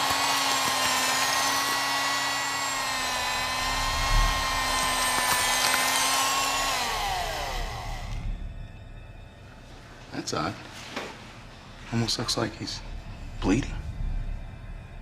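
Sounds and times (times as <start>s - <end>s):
electric bone saw whining: 0.0s - 8.4s.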